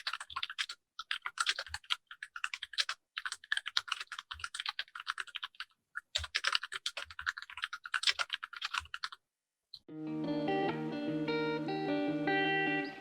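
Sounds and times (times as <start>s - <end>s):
mechanical keyboard typing: 0.0s - 9.2s.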